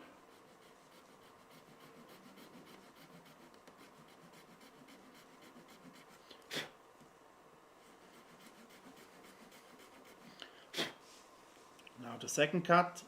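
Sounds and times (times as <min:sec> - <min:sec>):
saw blade sawing plastic: 0:08.0 - 0:10.4.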